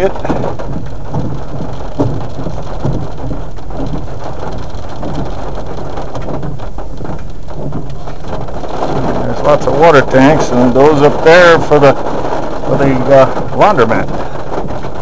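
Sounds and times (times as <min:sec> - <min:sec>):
heavy rain on car roof: 0:00.0 - 0:15.0
road and engine hum: 0:00.0 - 0:15.0.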